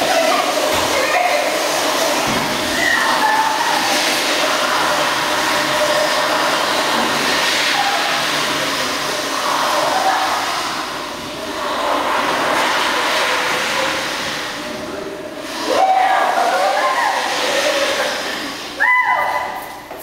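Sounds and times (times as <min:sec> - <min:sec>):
train rumbling and hissing: 0:00.0 - 0:19.9.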